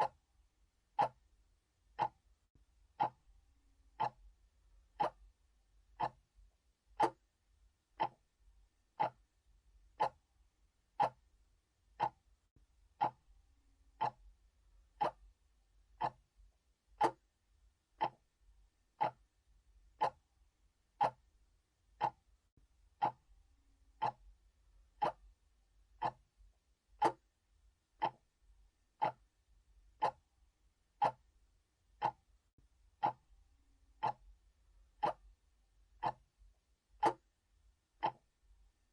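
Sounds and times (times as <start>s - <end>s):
clock ticking: 0.0s - 0.2s, 0.9s - 1.3s, 1.9s - 2.2s, 2.9s - 3.3s, 3.9s - 4.3s, 4.9s - 5.3s, 6.0s - 6.3s, 6.9s - 7.3s, 8.0s - 8.3s, 9.0s - 9.3s, 9.9s - 10.3s, 11.0s - 11.3s, 11.9s - 12.3s, 13.0s - 13.3s, 14.0s - 15.4s, 16.0s - 16.3s, 17.0s - 17.4s, 18.0s - 18.3s, 19.0s - 20.3s, 21.0s - 21.3s, 22.0s - 22.3s, 23.0s - 23.3s, 23.9s - 26.4s, 27.0s - 27.4s, 28.0s - 28.3s, 28.9s - 30.3s, 30.9s - 31.3s, 32.0s - 32.4s, 33.0s - 37.4s, 38.0s - 38.4s.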